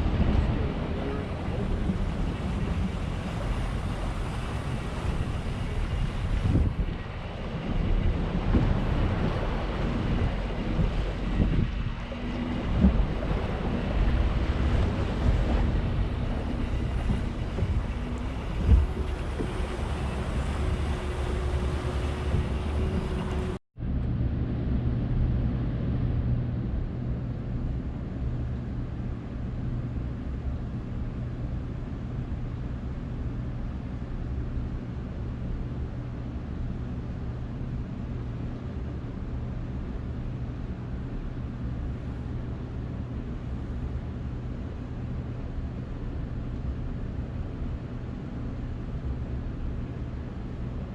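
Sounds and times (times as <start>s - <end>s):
boat engine running: 0.0s - 23.6s
water noise: 0.0s - 23.6s
low hum: 0.0s - 50.9s
wind: 0.0s - 50.9s.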